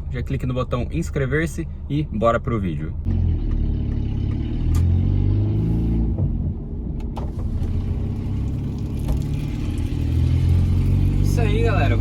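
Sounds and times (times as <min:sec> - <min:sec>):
car engine exhaust note: 0:07.4 - 0:12.0.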